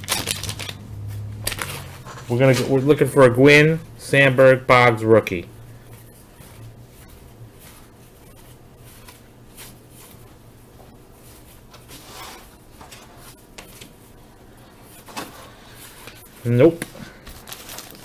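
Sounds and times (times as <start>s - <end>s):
cards rustling: 0.0s - 10.4s, 14.8s - 18.0s
faint low hum: 0.0s - 18.0s.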